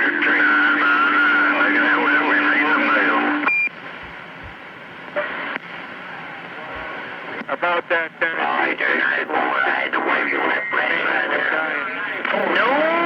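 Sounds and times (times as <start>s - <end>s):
garbled radio voices: 0.0s - 13.0s
radio static hiss: 0.0s - 13.0s.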